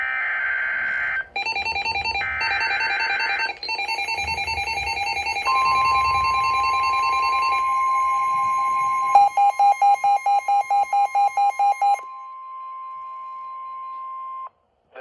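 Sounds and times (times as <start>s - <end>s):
steady warning alarm tone: 0.8s - 13.6s
harsh buzzing data bursts: 1.4s - 11.4s
rapid pulsing electronic beeps: 1.4s - 12.3s.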